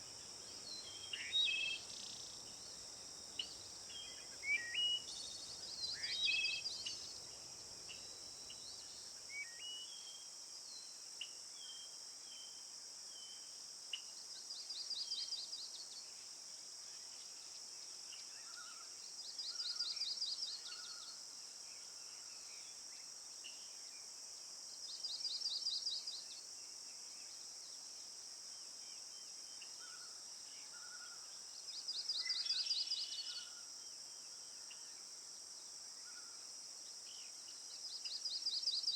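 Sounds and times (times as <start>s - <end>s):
insect drone: 0.0s - 38.9s.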